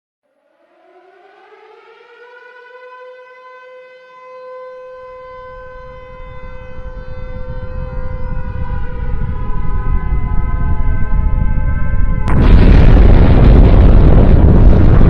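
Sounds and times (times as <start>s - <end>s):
air-raid siren wailing: 0.3s - 15.0s
deep rumble of explosion: 6.5s - 15.0s.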